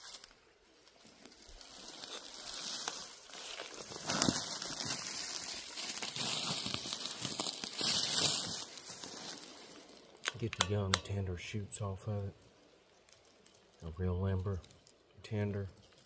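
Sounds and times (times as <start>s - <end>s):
dry leaves rustling and crackling: 0.0s - 10.9s, 12.1s - 16.0s.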